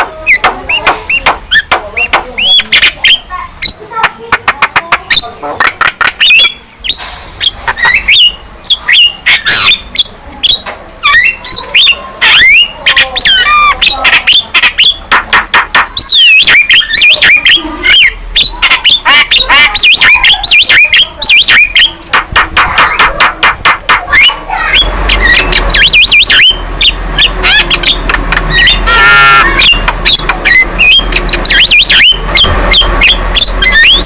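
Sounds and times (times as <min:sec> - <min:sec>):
myna bird singing: 0:00.0 - 0:34.0.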